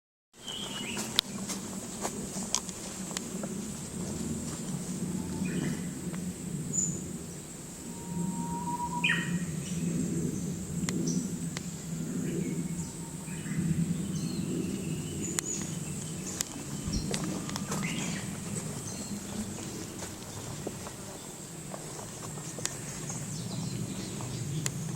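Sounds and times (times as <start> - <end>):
bird chirping: 6.7 - 19.5
rising bird whistle: 7.8 - 9.9, 12.4 - 14.3.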